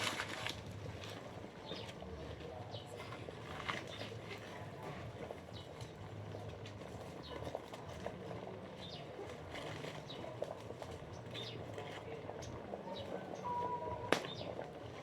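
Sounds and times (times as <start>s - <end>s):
small birds chirping: 11.1s - 13.6s.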